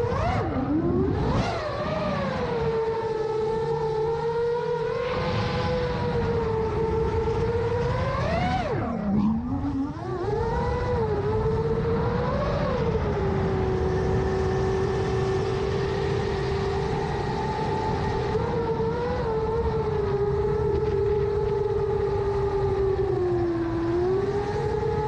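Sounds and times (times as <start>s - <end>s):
drone motors whining: 0.0s - 25.0s.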